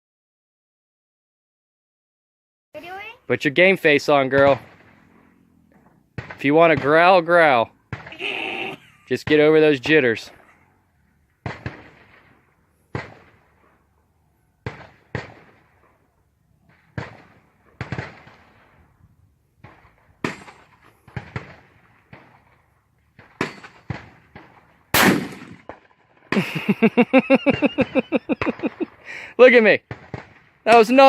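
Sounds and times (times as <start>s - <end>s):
loud close rifle shot: 4.2s - 8.2s, 11.4s - 13.6s, 14.6s - 15.8s, 16.6s - 18.9s, 19.6s - 26.4s, 29.8s - 31.0s
rifle shots with echo: 4.2s - 8.2s, 11.4s - 14.0s, 14.6s - 19.0s, 19.6s - 26.5s, 29.8s - 31.0s
person's voice in short pulses: 8.1s - 8.8s.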